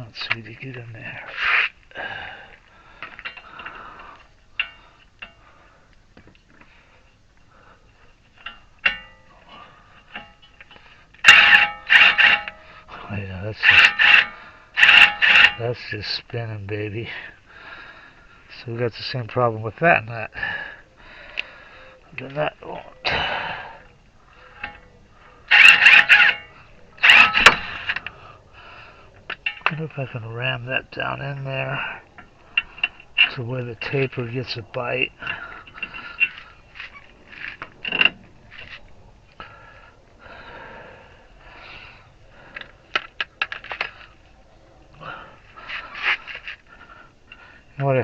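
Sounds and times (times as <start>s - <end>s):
metal tools clinking: 8.3s - 15.7s, 24.4s - 28.2s, 32.2s - 39.0s
impact wrench bursts: 25.5s - 28.1s.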